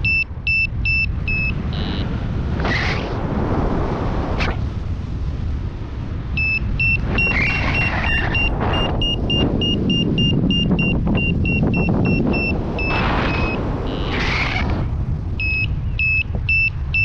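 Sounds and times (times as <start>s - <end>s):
variometer beeping: 0.0s - 2.1s, 6.3s - 17.0s
wind on microphone: 0.0s - 17.0s.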